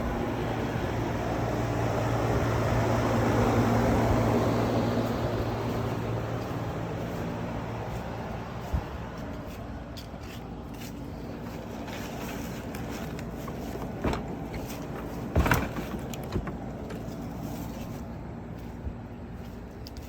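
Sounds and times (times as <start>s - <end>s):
pressure washer engine droning: 0.0s - 19.5s
short knocks and bumps: 12.6s - 17.3s.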